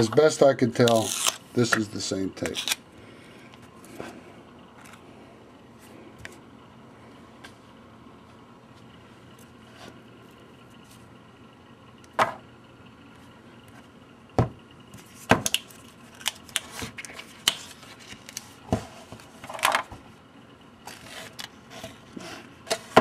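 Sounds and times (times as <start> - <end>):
tape crackle: 0.8 - 1.5, 2.4 - 2.8, 15.4 - 18.6.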